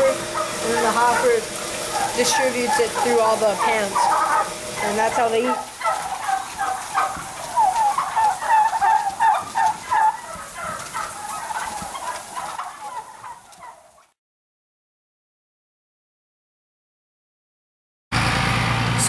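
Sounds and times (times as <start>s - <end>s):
turkeys calling: 0.0s - 14.2s.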